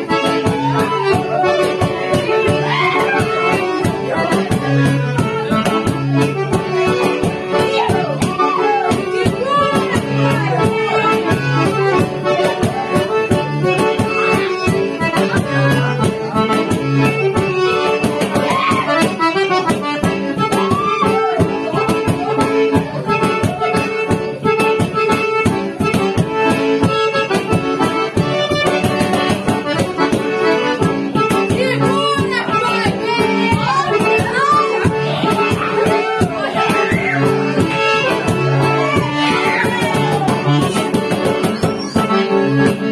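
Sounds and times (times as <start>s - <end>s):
accordion playing lively tune: 0.0s - 42.9s
fast percussion beat: 33.1s - 42.1s.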